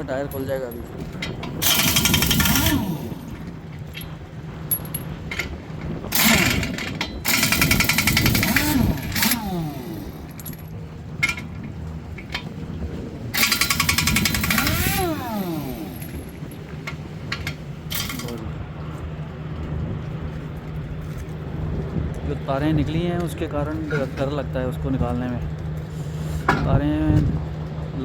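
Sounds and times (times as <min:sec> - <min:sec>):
impact wrench hammering: 0:01.6 - 0:03.2, 0:13.4 - 0:16.2.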